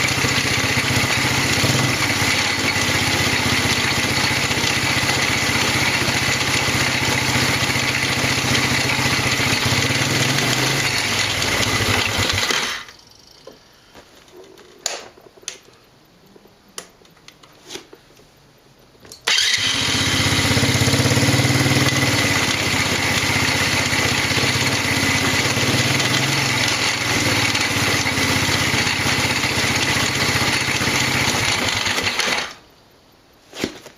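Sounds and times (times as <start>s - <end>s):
motorcycle engine running: 0.0s - 12.8s, 19.3s - 32.4s.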